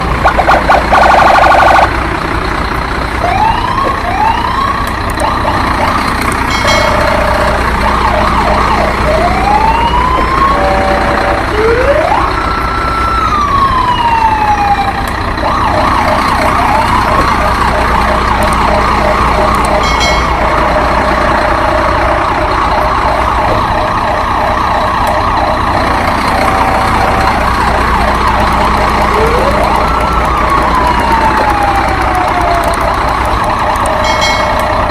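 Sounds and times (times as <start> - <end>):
gliding siren tones: 0.0 - 2.0, 3.2 - 34.9.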